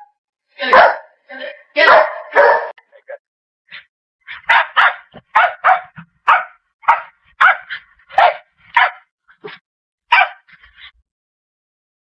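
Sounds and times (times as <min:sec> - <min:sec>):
dog barking: 0:00.6 - 0:01.2, 0:01.8 - 0:02.8, 0:03.7 - 0:11.0.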